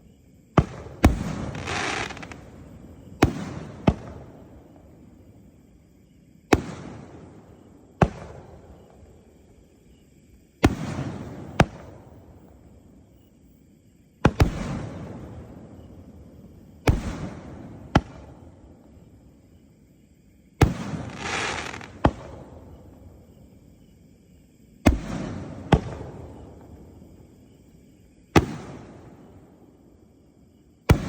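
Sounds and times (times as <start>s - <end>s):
fireworks booms with rolling echo: 0.6s - 5.5s, 6.4s - 9.2s, 10.6s - 13.0s, 14.2s - 19.1s, 20.6s - 23.4s, 24.8s - 27.5s, 28.2s - 30.0s, 30.8s - 31.0s.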